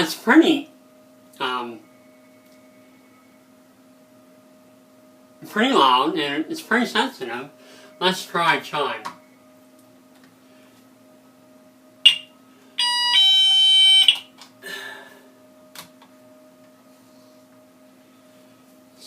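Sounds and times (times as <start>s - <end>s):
two-note electronic door chime: 12.0s - 14.3s.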